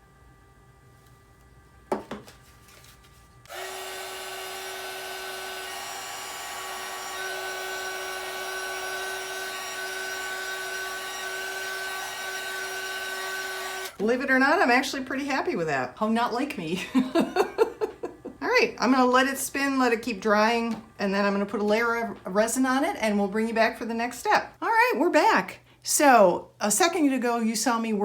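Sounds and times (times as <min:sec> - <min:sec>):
electric blower motor running: 0:03.4 - 0:14.2.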